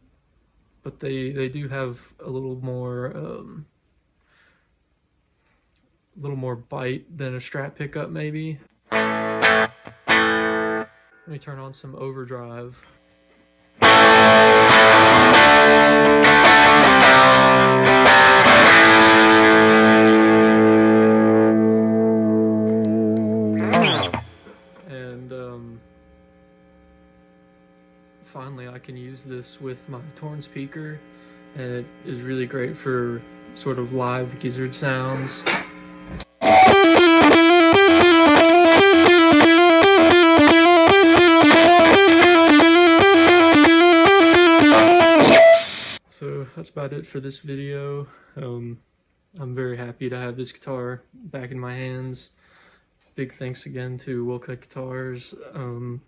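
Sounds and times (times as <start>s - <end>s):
distorted electric guitar chords: 8.8s - 11.3s, 13.6s - 46.0s.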